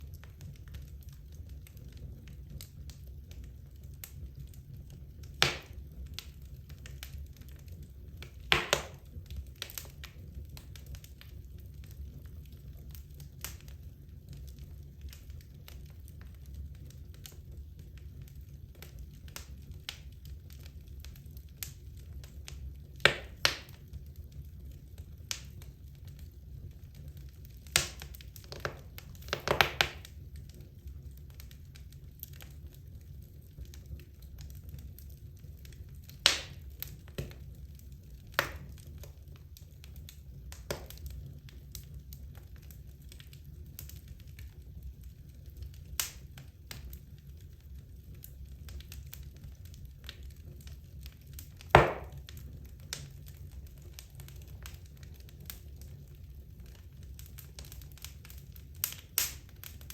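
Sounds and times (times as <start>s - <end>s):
logs crackling in fireplace: 0.0s - 59.9s
low steady fire rumble: 0.0s - 59.9s
sharp wood pops: 5.4s - 5.8s, 8.5s - 9.0s, 23.1s - 23.7s, 27.8s - 30.0s, 51.8s - 52.2s.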